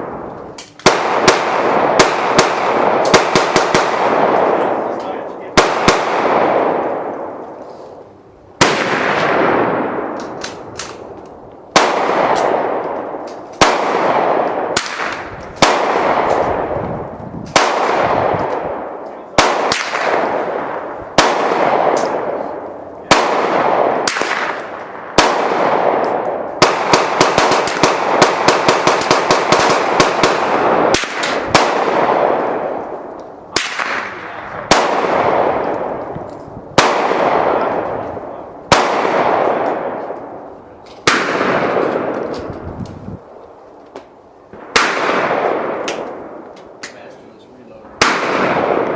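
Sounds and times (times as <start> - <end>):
gunshots with rolling echo: 0.0 - 48.9
rapid string of gunshots: 0.8 - 4.9, 5.5 - 6.9, 11.7 - 16.8, 17.5 - 32.9, 33.5 - 36.0, 48.0 - 48.9.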